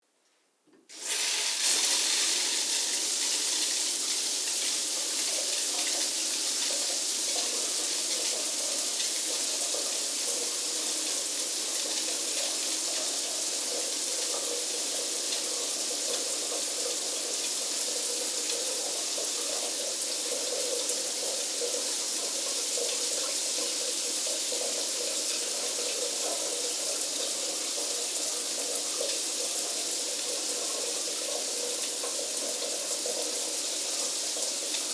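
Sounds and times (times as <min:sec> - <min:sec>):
shower water spraying: 0:00.9 - 0:09.8.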